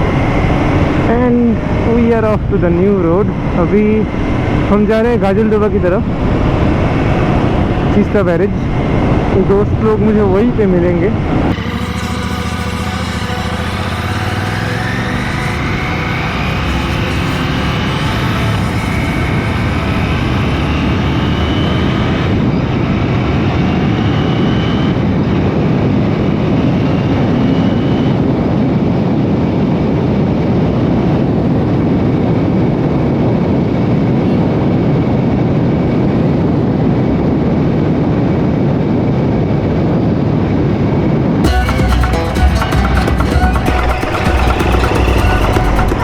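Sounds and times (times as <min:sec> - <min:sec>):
wind rushing over microphone: 0:00.0 - 0:41.5
motorcycle engine running: 0:05.8 - 0:24.7, 0:41.4 - 0:46.0.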